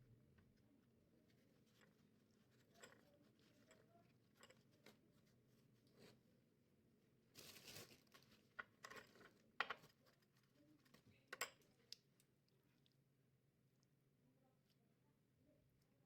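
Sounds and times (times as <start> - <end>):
rustle or crinkle: 7.3 - 9.4.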